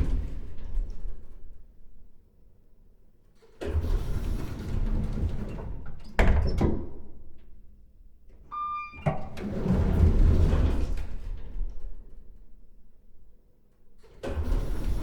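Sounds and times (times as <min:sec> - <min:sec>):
short single-pitched chime: 0:08.5 - 0:09.1
elevator doors rumbling: 0:08.5 - 0:12.7.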